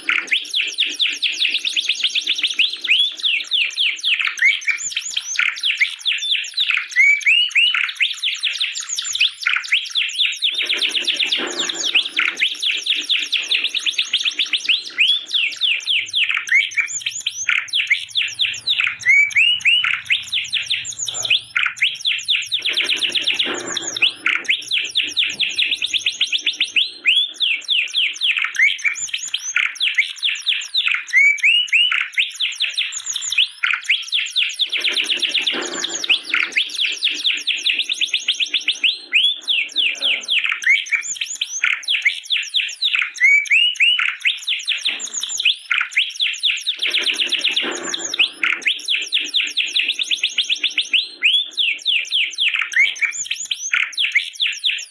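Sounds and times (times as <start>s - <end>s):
canary singing: 0.0s - 54.9s.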